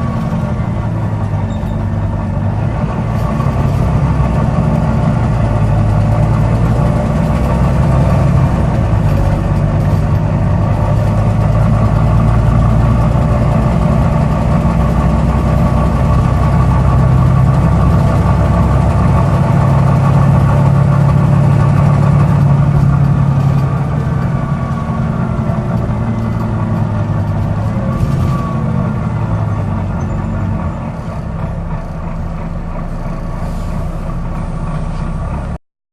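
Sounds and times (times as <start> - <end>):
bus diesel engine droning: 0.0 - 35.6.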